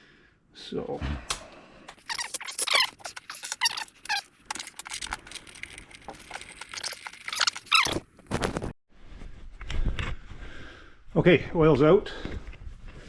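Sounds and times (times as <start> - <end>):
falling squeak: 2.0 - 8.4.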